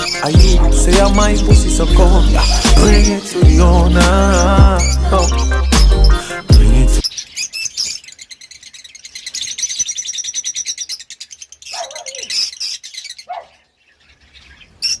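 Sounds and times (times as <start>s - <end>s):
parakeets chirping: 0.0s - 15.0s.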